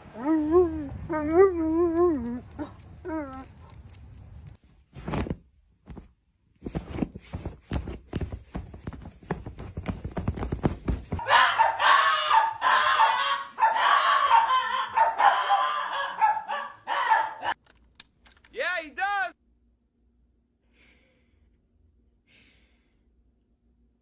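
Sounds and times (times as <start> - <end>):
dog barking and yapping: 11.2 - 17.6.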